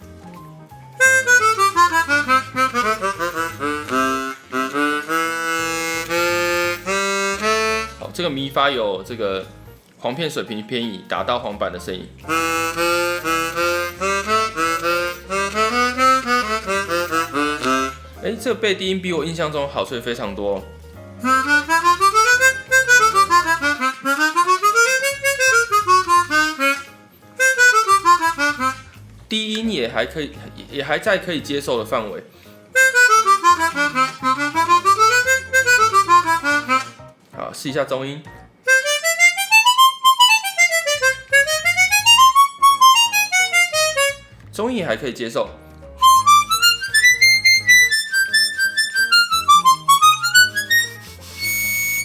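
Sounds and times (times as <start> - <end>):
harmonica playing: 0.9 - 8.4, 12.2 - 18.7, 21.0 - 29.0, 32.7 - 37.1, 38.6 - 44.4, 46.0 - 52.0.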